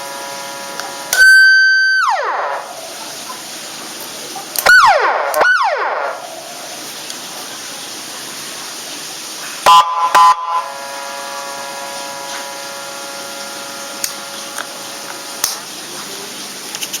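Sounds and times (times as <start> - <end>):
siren honking blasts: 0.0 - 3.0, 4.6 - 6.6, 9.7 - 15.4
steady horn tone: 0.0 - 3.0, 9.7 - 15.5
electronic siren whoop chirps: 0.5 - 2.9, 4.6 - 6.4.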